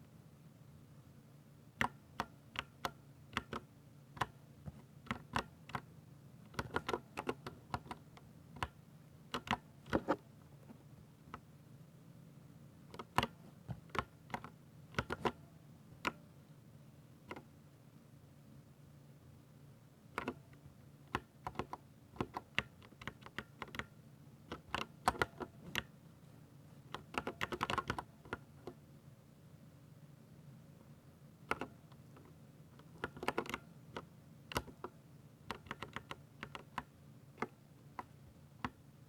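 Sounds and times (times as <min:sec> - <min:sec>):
mechanical keyboard typing: 0:01.8 - 0:05.9, 0:06.5 - 0:10.2, 0:13.0 - 0:15.4, 0:20.2 - 0:20.4, 0:21.1 - 0:23.9, 0:24.5 - 0:25.9, 0:26.9 - 0:28.8, 0:31.5 - 0:31.8, 0:32.8 - 0:34.9, 0:35.5 - 0:38.8.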